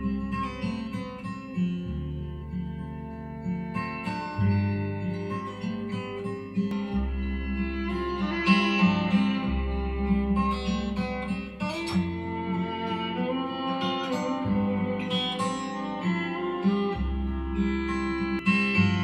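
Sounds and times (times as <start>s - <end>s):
plucked acoustic guitar: 0.0s - 19.0s
deep held bass notes: 6.7s - 19.0s.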